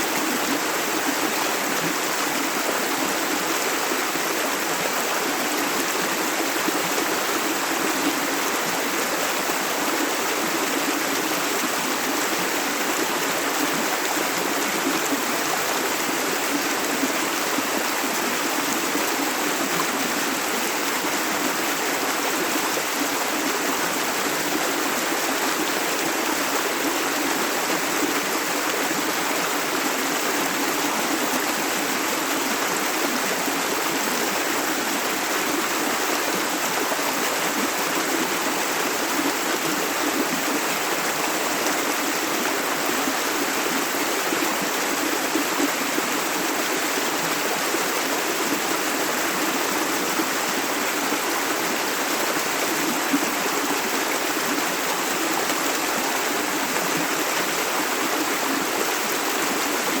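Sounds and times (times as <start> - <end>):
stream flowing over stones: 0.0 - 60.0.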